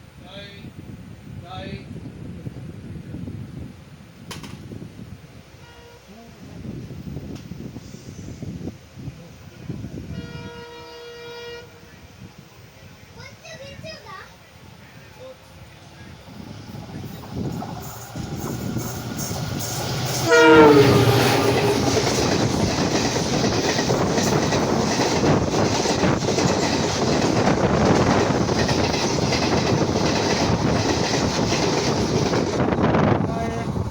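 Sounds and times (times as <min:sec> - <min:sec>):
train passing: 0:04.4 - 0:33.9
locomotive air horn: 0:10.1 - 0:11.8, 0:20.1 - 0:22.0
wheels clattering on rails: 0:16.2 - 0:32.8.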